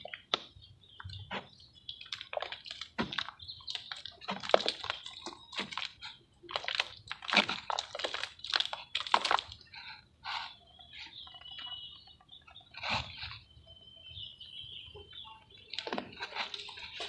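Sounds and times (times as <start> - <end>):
small water splashes: 0.0 - 9.9
water dripping: 0.0 - 9.9, 15.1 - 17.0
wet cement crumbling and crackling: 0.0 - 13.4, 15.1 - 17.0.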